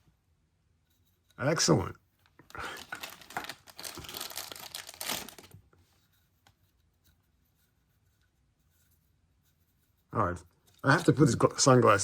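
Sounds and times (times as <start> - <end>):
packaging rustling and crinkling: 2.5 - 5.7.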